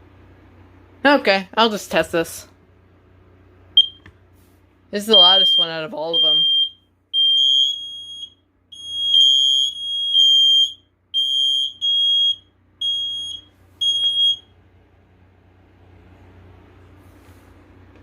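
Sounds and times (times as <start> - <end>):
smoke alarm beeping: 3.8 - 4.0, 5.0 - 14.6.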